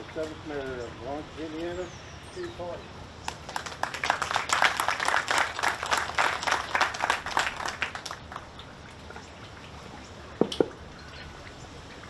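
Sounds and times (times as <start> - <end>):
audience applauding: 3.3 - 8.5.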